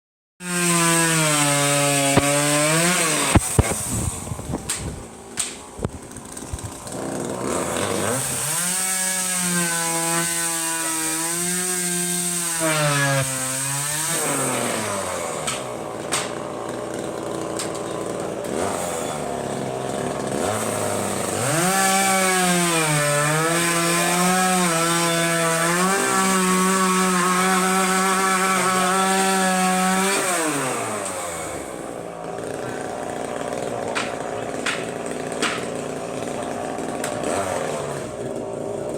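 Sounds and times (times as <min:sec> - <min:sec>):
small engine revving: 0:17.5 - 0:38.9.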